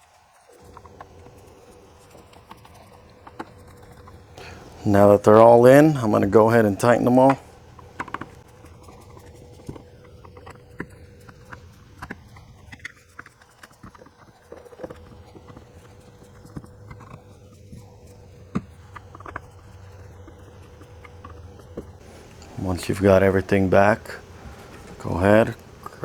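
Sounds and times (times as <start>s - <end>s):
faint steady hum: 0.1s - 26.0s.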